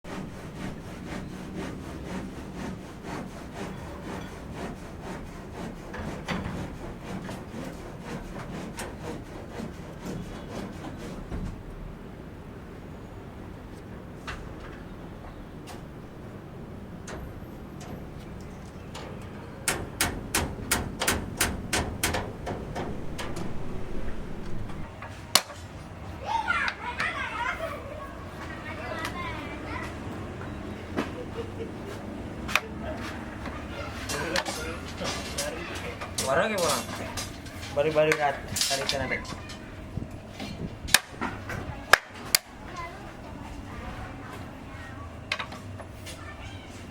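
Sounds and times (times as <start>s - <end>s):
rhythmic rasping strokes: 0.1s - 11.3s
sharp knocks: 19.7s - 23.6s.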